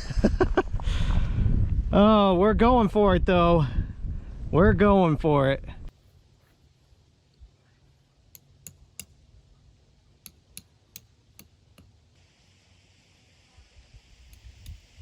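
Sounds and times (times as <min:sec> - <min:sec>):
faint steady hiss: 0:05.9 - 0:15.0.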